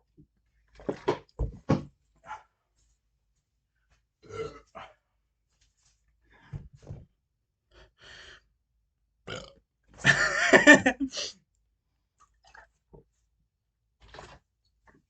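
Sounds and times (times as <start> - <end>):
person burping: 4.2 - 4.8, 9.3 - 11.3.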